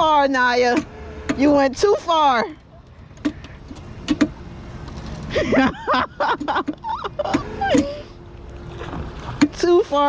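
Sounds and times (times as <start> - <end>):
voices calling out: 0.0 - 8.5
steady low rumble: 0.0 - 10.0.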